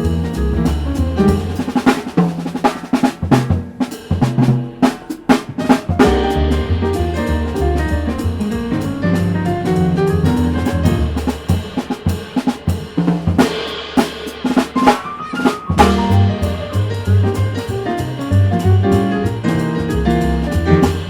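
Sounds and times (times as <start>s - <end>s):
double bass line: 0.0s - 1.8s, 6.0s - 11.5s, 15.8s - 21.0s
drums and cymbal hits: 0.0s - 21.0s
piano: 0.0s - 21.0s.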